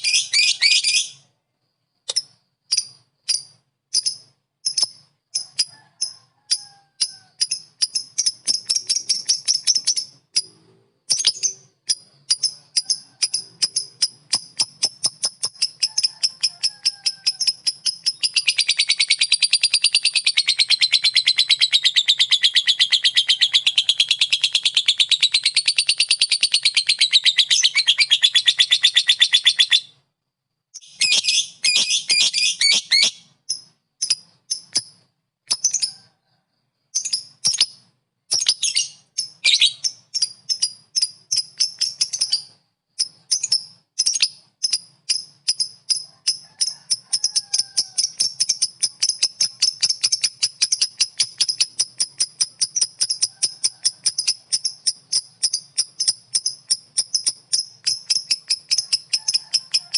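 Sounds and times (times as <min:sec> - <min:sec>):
bird chattering trill: 0:00.0 - 0:01.2, 0:02.1 - 0:30.0, 0:30.8 - 0:36.1, 0:37.0 - 0:59.9.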